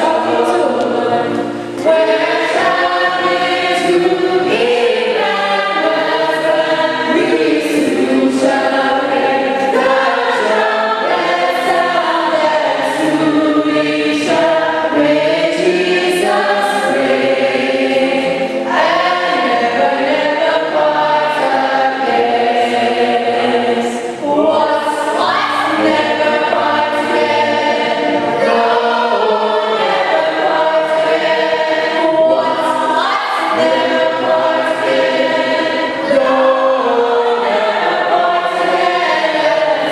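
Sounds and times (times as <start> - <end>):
choir singing a hymn: 0.0 - 39.9.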